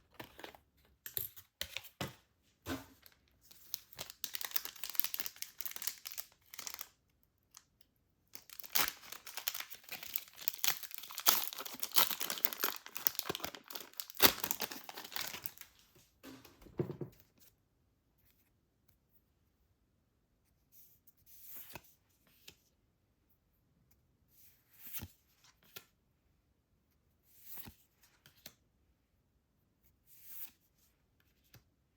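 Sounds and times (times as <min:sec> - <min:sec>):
blister pack tearing and crinkling: 0:03.5 - 0:06.9, 0:08.4 - 0:15.7
packaging snapping: 0:03.7 - 0:06.9, 0:08.4 - 0:15.7.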